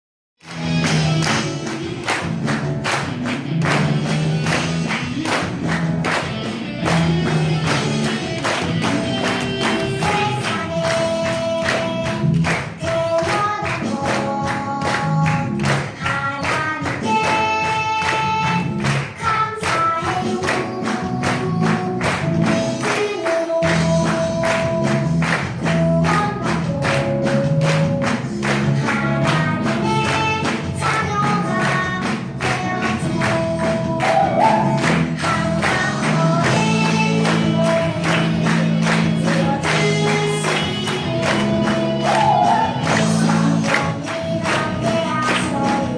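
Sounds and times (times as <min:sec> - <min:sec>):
gospel song with singing: 0:29.0 - 0:45.9.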